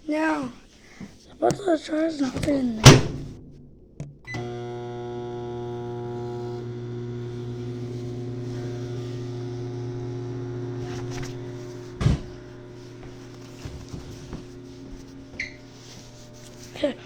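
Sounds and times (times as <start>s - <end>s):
microwave oven click: 4.3s - 15.7s
microwave oven humming: 4.3s - 17.0s.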